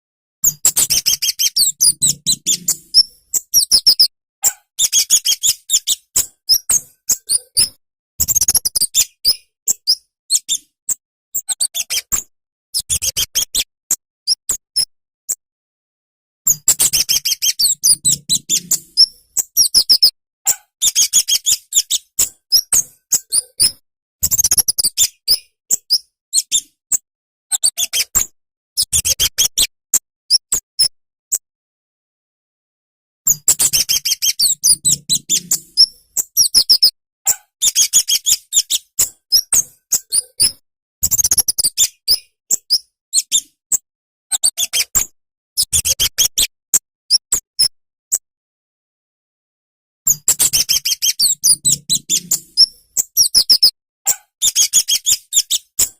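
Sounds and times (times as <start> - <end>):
bird chips and twitters: 0.4 - 4.1, 4.8 - 10.7, 16.5 - 26.8, 33.3 - 43.6, 50.1 - 55.9.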